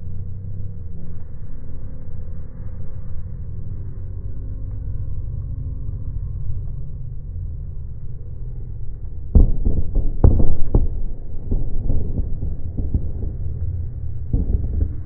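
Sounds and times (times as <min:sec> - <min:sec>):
low rumble: 0:00.0 - 0:15.0
fireworks booming: 0:09.4 - 0:15.0
fireworks crackling: 0:09.4 - 0:15.0.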